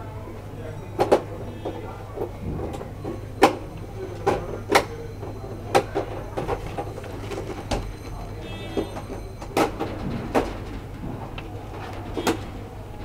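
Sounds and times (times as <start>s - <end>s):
plastic parts clicking and knocking: 8.7s - 12.6s.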